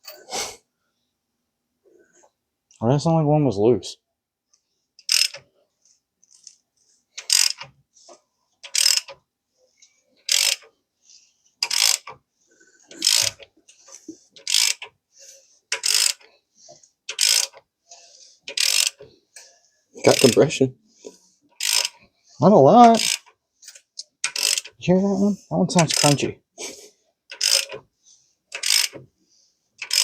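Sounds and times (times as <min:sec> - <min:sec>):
ratchet wrench clicking: 0:05.0 - 0:05.4, 0:07.2 - 0:07.7, 0:08.6 - 0:09.2, 0:10.3 - 0:10.7, 0:11.6 - 0:12.2, 0:12.9 - 0:13.4, 0:14.4 - 0:14.9, 0:15.7 - 0:16.3, 0:17.1 - 0:17.6, 0:18.5 - 0:19.0, 0:20.1 - 0:20.4, 0:21.6 - 0:22.0, 0:22.8 - 0:24.8, 0:25.8 - 0:26.2, 0:27.3 - 0:27.8, 0:28.5 - 0:29.0, 0:29.8 - 0:30.0.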